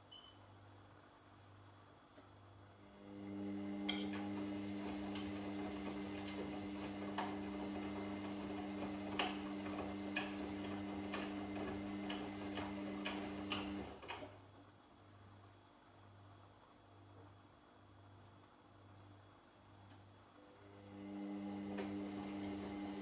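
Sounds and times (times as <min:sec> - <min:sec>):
washing machine motor hum: 0:02.8 - 0:14.4, 0:20.5 - 0:23.0.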